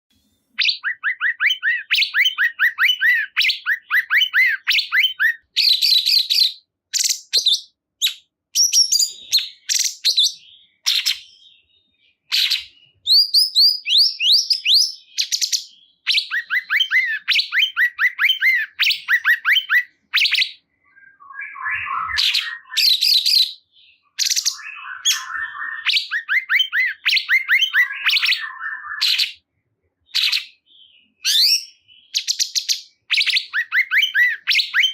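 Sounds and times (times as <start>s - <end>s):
songbird singing: 0.1s - 34.9s.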